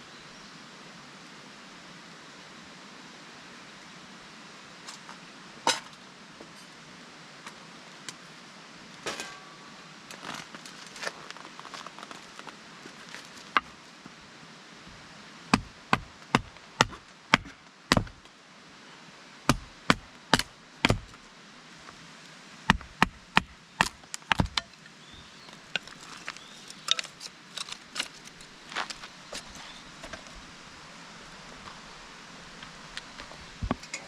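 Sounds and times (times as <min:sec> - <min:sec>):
firewood being chopped: 0:15.5 - 0:18.2, 0:19.5 - 0:21.2, 0:22.7 - 0:24.7.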